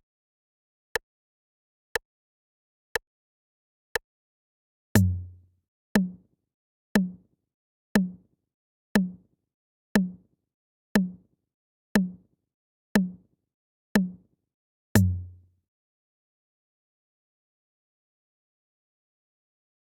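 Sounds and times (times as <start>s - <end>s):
countdown timer ticking: 5.0s - 5.3s, 10.0s - 10.2s, 15.0s - 15.3s.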